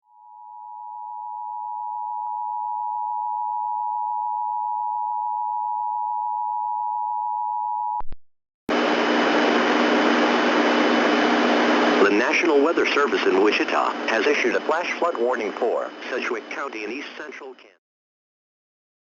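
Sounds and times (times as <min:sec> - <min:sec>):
low hum: 0:08.7 - 0:17.0
loud steady hiss: 0:08.7 - 0:17.5.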